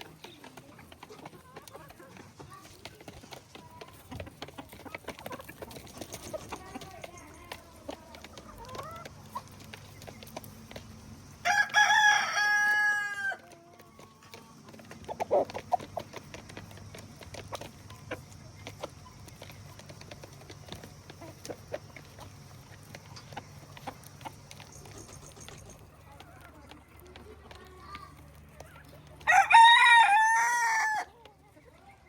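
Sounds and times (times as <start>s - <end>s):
chickens clucking: 0.0s - 32.0s
rooster crowing: 11.4s - 13.4s, 29.2s - 31.1s.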